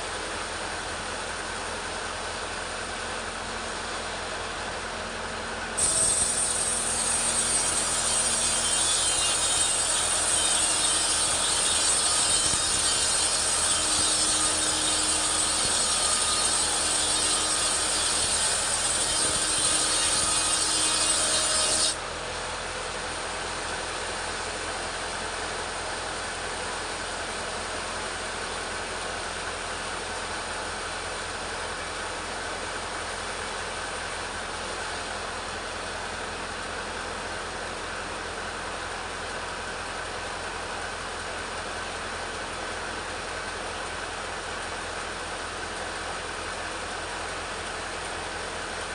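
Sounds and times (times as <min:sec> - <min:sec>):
chainsaw cutting through log: 0:05.8 - 0:22.0.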